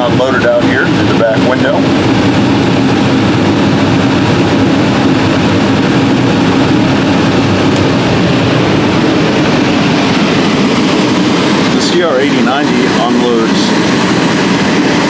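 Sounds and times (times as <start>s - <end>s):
combine harvester droning: 0.0s - 15.0s.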